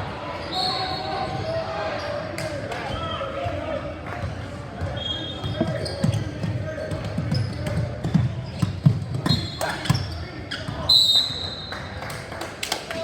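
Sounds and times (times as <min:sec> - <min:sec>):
sneakers squeaking on court: 0:04.8 - 0:11.7.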